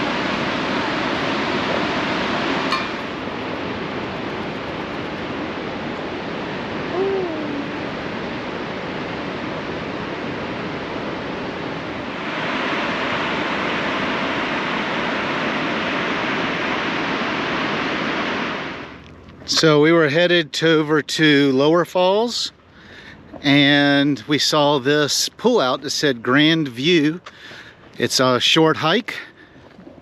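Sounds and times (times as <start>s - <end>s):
waterfall rushing: 0.0s - 3.5s, 11.4s - 18.9s.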